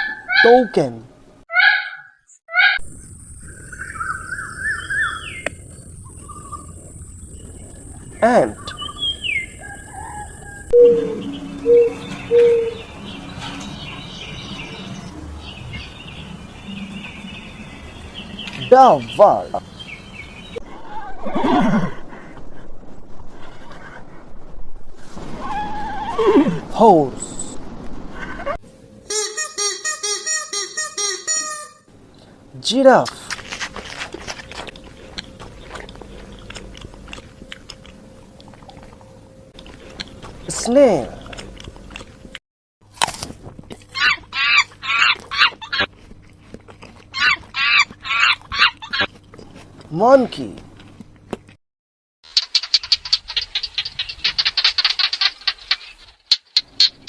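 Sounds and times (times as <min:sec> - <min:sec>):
small birds chirping: 0:01.9 - 0:20.6, 0:52.3 - 0:57.0
dove cooing: 0:05.0 - 0:12.8, 0:52.6 - 0:55.9
giraffe chewing food: 0:33.0 - 0:51.6, 0:52.3 - 0:57.0.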